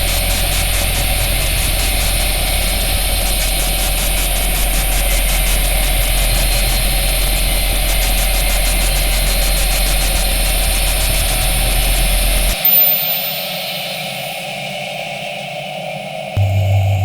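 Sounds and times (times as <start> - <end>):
mechanical engine drone: 0.0 - 12.6, 16.4 - 17.0
high-pitched whine: 0.0 - 17.0.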